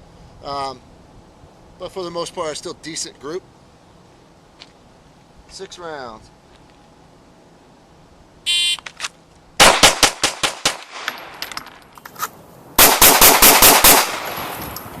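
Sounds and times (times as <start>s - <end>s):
rapid pistol shots: 9.6s - 11.2s, 12.8s - 14.6s.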